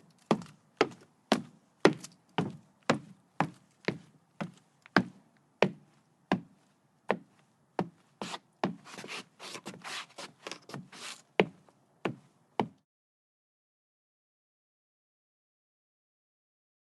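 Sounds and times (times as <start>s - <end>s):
footsteps on wooden decking: 0.2s - 12.8s.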